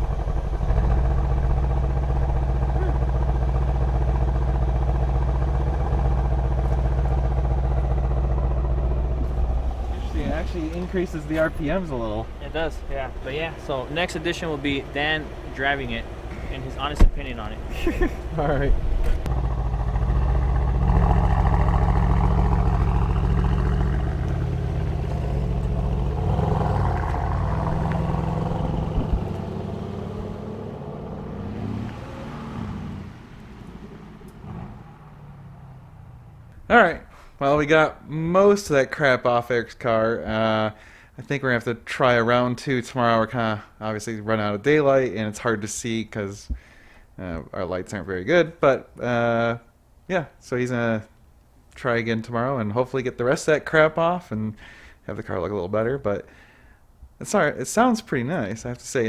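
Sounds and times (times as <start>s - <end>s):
car engine idling: 0.0s - 37.8s.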